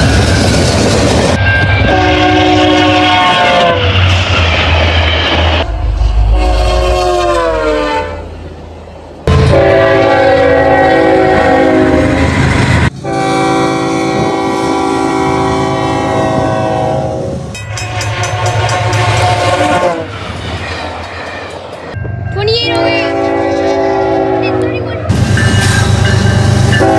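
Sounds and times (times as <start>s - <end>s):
rumble of passing train: 0.0s - 26.9s
train horn blasts: 1.7s - 4.0s, 6.1s - 8.4s, 9.3s - 20.1s, 22.6s - 26.9s.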